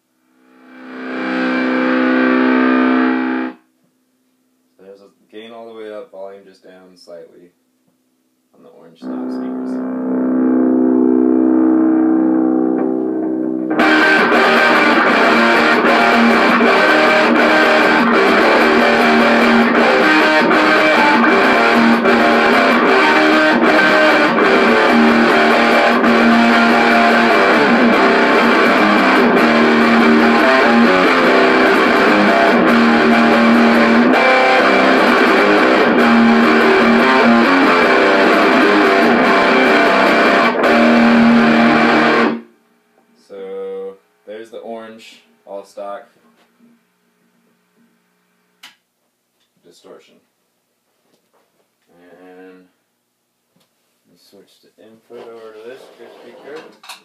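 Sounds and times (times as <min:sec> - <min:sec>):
distorted electric guitar riff: 0:00.0 - 0:03.7, 0:08.9 - 0:42.5.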